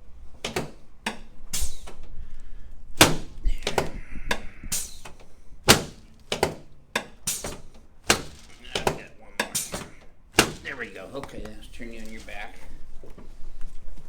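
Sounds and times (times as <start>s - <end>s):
treatment table knocks and thunks: 0.4s - 1.3s, 3.0s - 11.6s.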